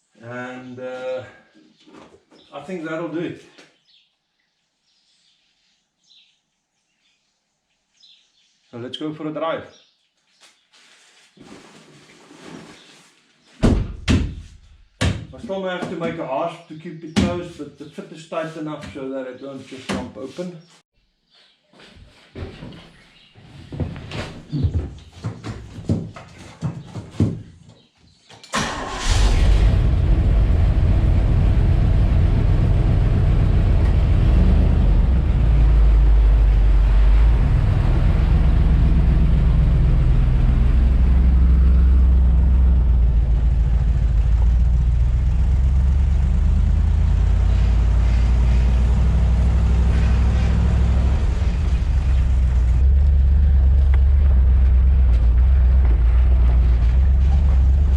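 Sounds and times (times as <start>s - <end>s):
car engine starting and rumbling: 28.5s - 57.9s.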